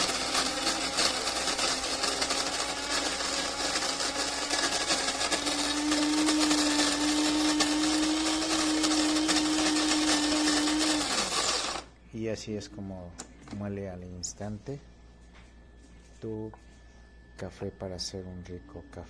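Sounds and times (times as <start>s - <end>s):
electric coffee grinder whirring: 0.0s - 11.9s.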